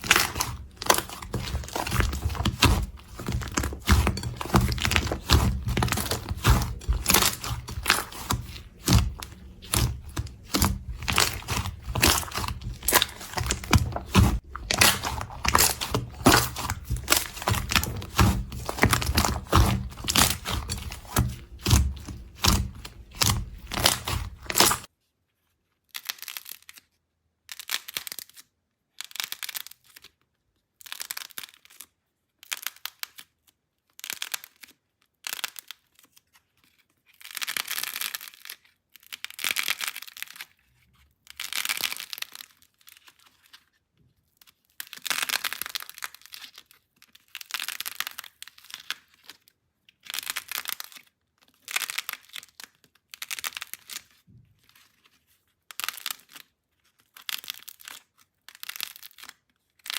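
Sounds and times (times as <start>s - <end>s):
slime crackling and crinkling: 0.0s - 24.9s.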